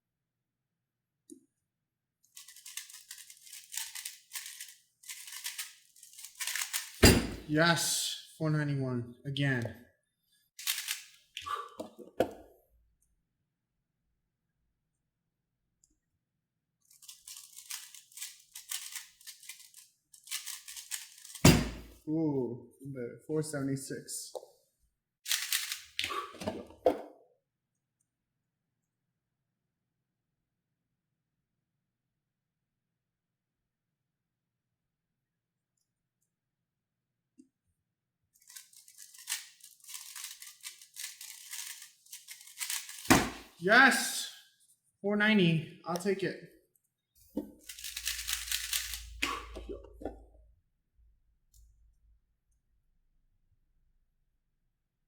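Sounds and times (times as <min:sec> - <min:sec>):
puzzle cube clicking and rattling: 0:02.3 - 0:07.0, 0:10.6 - 0:11.2, 0:16.9 - 0:21.5, 0:25.3 - 0:26.0, 0:38.4 - 0:43.2, 0:47.6 - 0:49.6.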